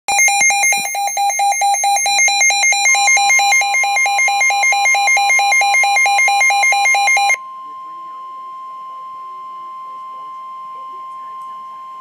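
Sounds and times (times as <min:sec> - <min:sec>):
weather radio alarm beeping rapidly: 0:00.1 - 0:07.4
steady warning tone: 0:00.1 - 0:12.0.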